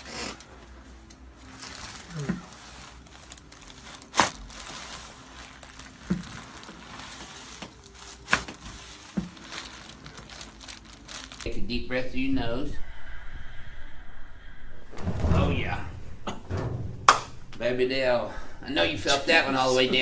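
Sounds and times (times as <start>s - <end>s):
crinkling and rustling: 0.0s - 11.5s.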